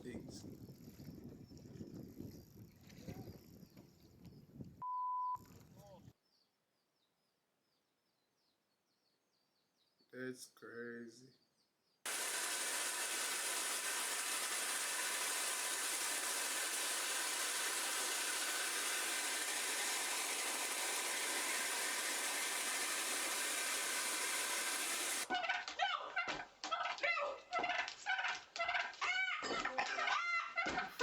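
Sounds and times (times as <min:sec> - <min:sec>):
loud steady hiss: 0:12.1 - 0:25.3.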